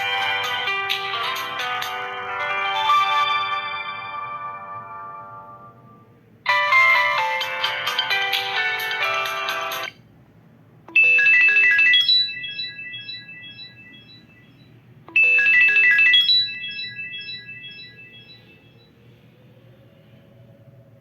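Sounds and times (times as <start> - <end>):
electronic ringtone melody: 0.0 - 5.8, 6.5 - 10.0, 10.9 - 19.0
short bright ringtone: 11.0 - 18.6.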